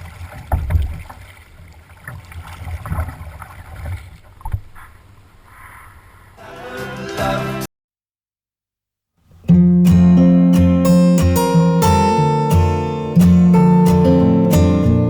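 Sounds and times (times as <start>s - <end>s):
paddle strokes and splashes: 0.0s - 4.7s
acoustic guitar music: 9.3s - 15.0s.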